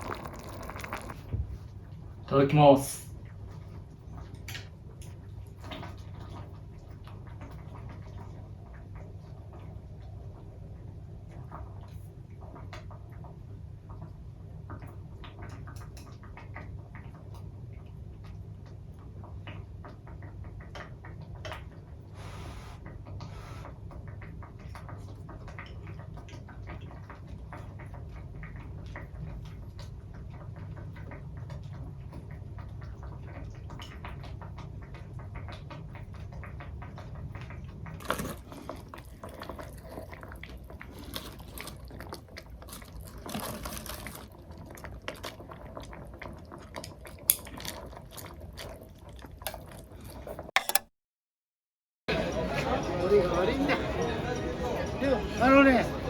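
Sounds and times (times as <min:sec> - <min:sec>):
utensils tapping on dishes: 0:50.6 - 0:50.8.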